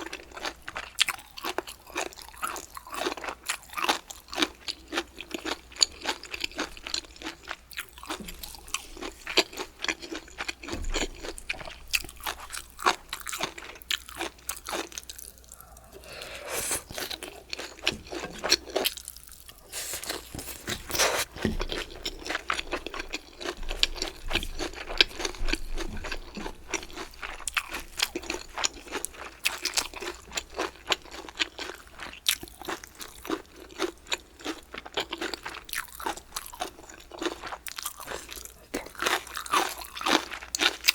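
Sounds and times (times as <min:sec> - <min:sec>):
crunchy food chewing: 0:00.0 - 0:40.9.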